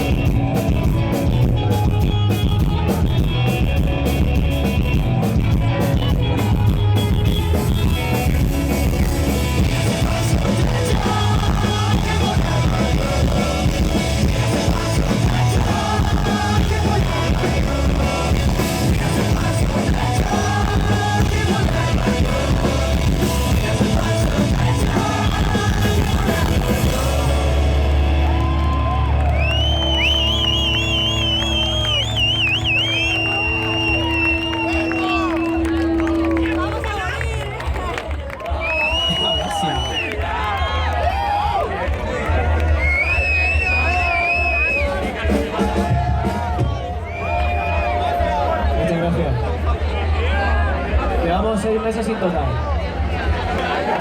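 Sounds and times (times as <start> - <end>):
electric guitars: 0.0 - 38.1
drums: 0.0 - 54.0.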